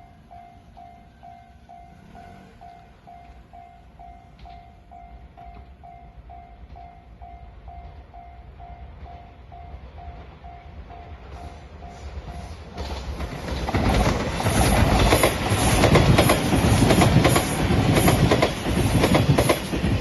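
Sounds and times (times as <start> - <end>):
level-crossing warning bell: 0.0 - 12.7.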